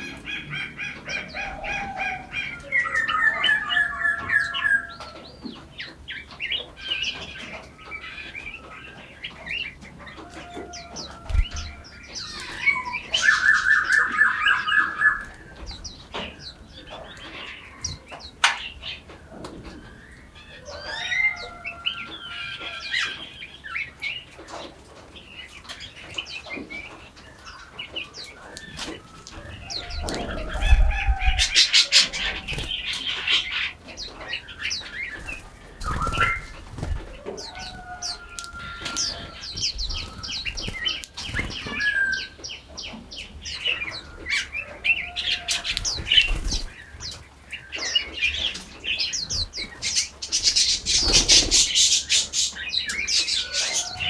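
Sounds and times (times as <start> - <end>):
songbirds singing: 0.0 - 54.0.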